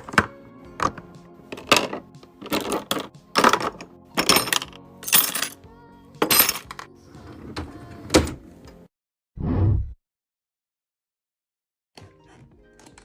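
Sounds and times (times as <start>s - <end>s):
containers clinking set down: 0.0s - 5.6s
background music: 0.0s - 8.9s, 12.0s - 13.0s.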